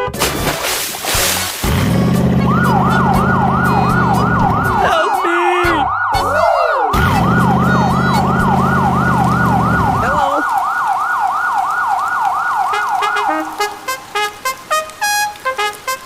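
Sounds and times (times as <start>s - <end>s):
deep engine rumble: 1.5s - 4.8s, 7.0s - 10.3s
siren yelping: 2.0s - 14.1s.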